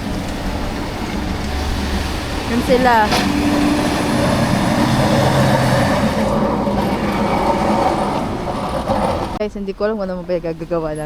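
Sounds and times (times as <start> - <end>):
snow-clearing machine engine: 0.0 - 9.4.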